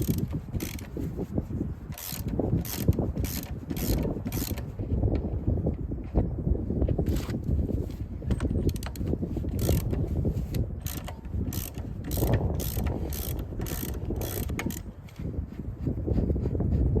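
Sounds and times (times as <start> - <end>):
ratchet wrench clicking: 0.0 - 1.1, 1.9 - 4.7, 8.6 - 14.9.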